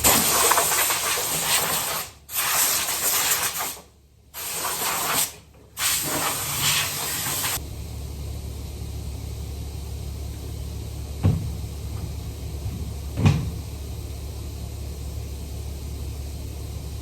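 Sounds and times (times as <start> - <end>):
low hum of machinery: 5.4 - 17.0.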